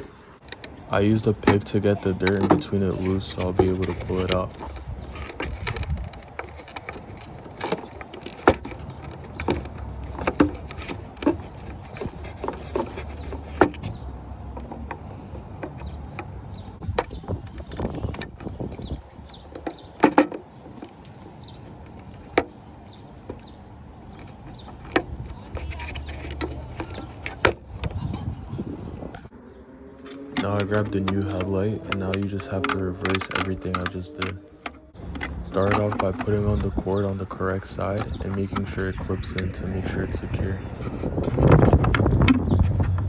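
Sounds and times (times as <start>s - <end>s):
hard plastic clicks and knocks: 0.4s - 22.6s, 30.3s - 40.6s.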